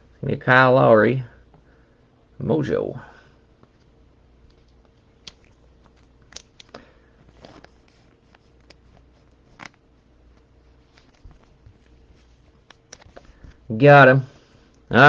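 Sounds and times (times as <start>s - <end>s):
low steady hum: 0.0s - 15.0s
trading cards rustling in sleeves: 3.6s - 13.8s.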